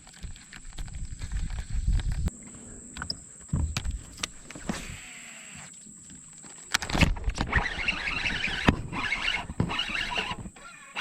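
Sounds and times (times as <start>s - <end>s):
steady rough hiss: 1.7s - 6.8s.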